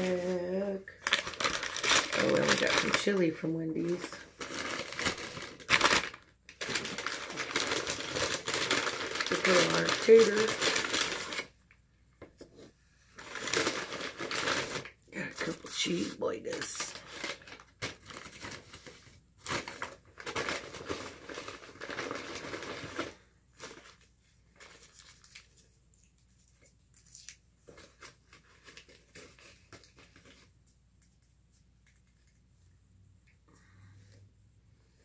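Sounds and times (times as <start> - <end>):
paper bags crinkling: 0.0 - 11.6, 13.2 - 25.7.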